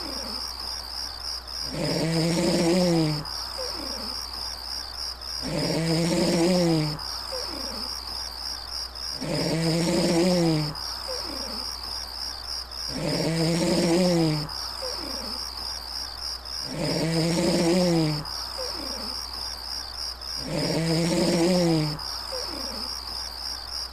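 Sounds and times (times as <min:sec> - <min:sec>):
crickets chirping: 0:00.0 - 0:23.9
low drawn-out animal call: 0:01.6 - 0:04.2, 0:16.6 - 0:19.2, 0:20.4 - 0:22.9.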